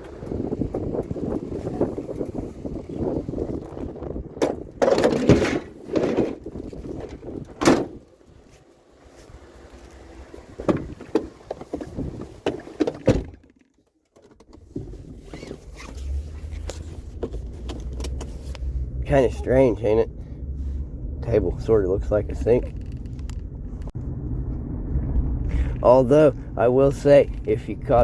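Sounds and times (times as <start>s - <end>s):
vehicle engine humming low: 0.0s - 4.8s, 6.4s - 12.6s, 14.5s - 28.0s.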